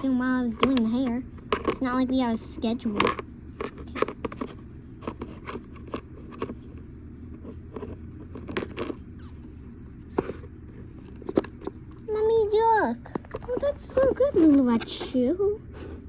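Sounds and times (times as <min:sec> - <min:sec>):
toys scraping and clicking: 0:13.0 - 0:15.5.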